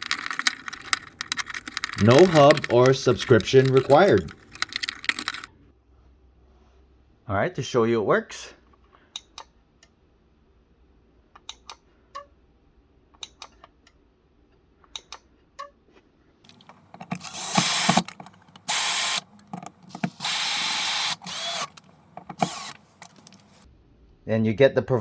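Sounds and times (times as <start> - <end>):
power drill running: 16.5 - 23.6.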